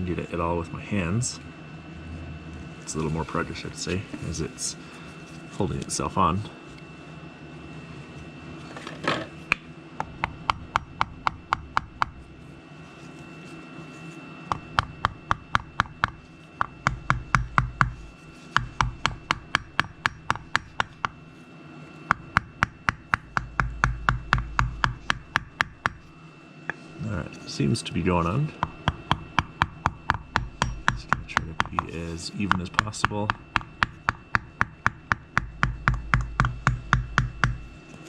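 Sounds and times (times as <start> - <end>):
hammer tapping on wood: 9.5 - 12.2, 14.5 - 21.2, 22.1 - 26.1, 28.6 - 37.7.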